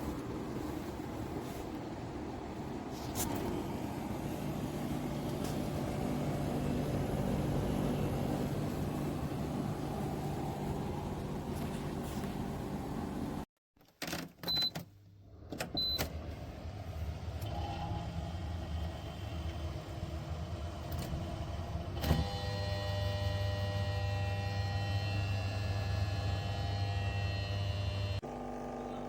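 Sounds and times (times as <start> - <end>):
dehumidifier humming: 0.0 - 13.4.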